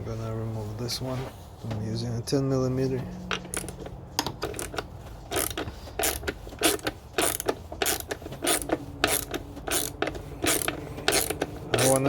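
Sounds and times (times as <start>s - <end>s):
ratchet wrench clicking: 3.5s - 12.0s.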